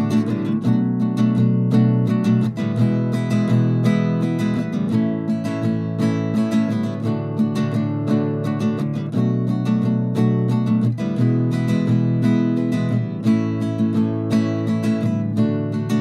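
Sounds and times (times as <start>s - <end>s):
acoustic guitar strumming chords: 0.0s - 16.0s.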